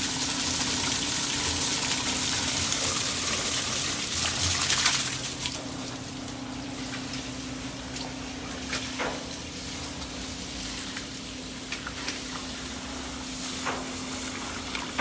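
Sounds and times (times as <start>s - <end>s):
water rushing through piping: 0.0s - 5.8s.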